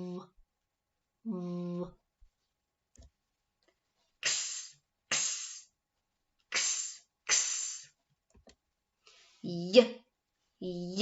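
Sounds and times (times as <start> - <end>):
woman making hissing ks sounds: 4.2 - 5.8, 6.5 - 8.0.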